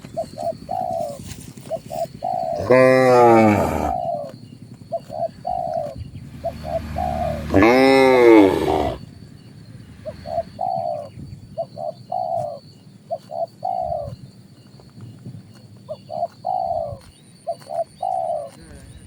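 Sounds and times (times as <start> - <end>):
dove cooing: 0.0 - 9.1, 10.0 - 14.2, 15.9 - 18.6
cow mooing: 2.6 - 4.0, 6.2 - 9.1.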